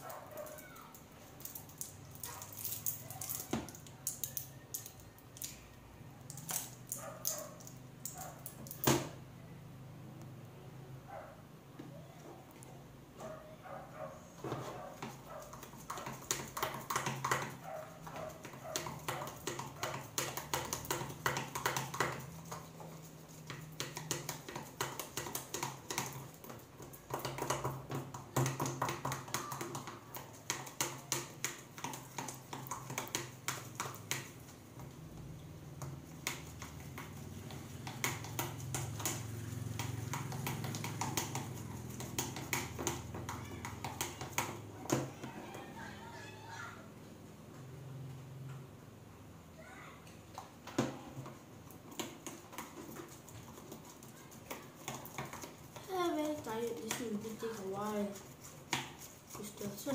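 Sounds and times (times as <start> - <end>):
slime stirred with wet clicks: 0.4 - 8.8.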